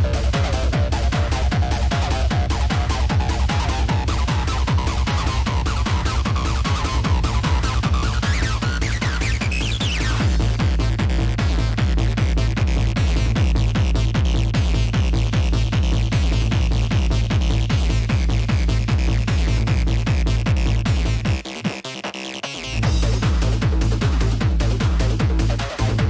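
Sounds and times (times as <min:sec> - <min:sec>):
techno music: 0:00.0 - 0:26.0.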